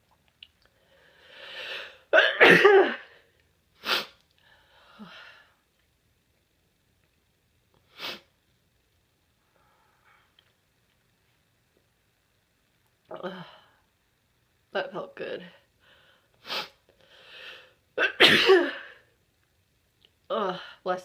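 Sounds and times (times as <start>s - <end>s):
person sneezing: 1.7s - 3.1s, 18.0s - 19.0s.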